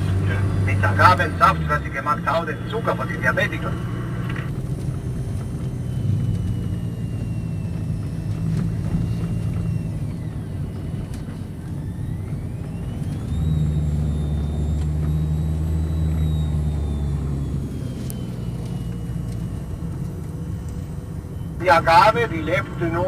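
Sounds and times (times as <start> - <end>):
bus engine hum from inside: 0.0 - 23.0
faint high whine: 21.6 - 23.0.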